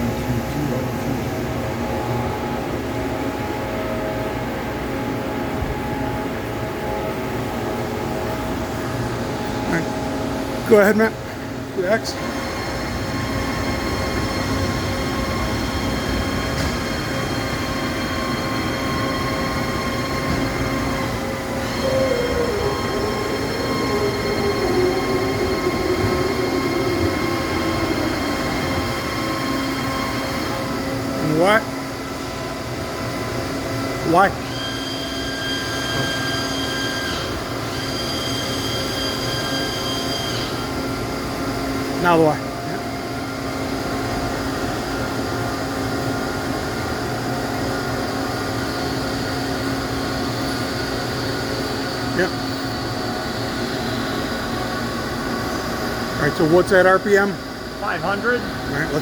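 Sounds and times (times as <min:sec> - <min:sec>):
high-pitched machine whine: 0:00.0 - 0:59.0
servo drive high-pitched whine: 0:34.2 - 0:41.1.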